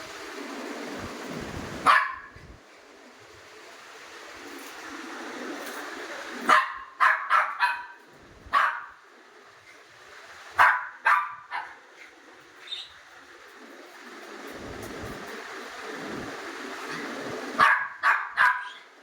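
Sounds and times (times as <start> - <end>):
small dog yapping: 1.8 - 2.4, 6.4 - 9.0, 10.6 - 12.1, 17.6 - 18.9.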